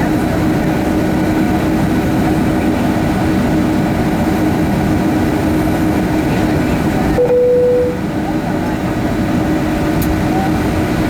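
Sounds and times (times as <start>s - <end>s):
jet engines running in cabin: 0.0s - 11.0s.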